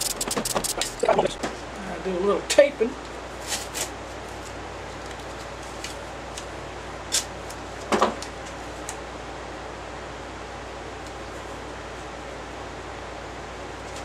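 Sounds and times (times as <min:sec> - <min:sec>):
tape being pulled and applied: 0:00.0 - 0:01.0
steady background hum: 0:00.0 - 0:14.0.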